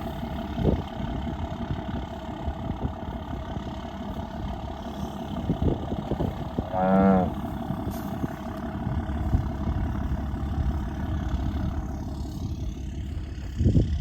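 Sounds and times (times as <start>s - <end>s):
vehicle engine running: 0.0s - 14.0s
cow lowing: 6.5s - 7.6s.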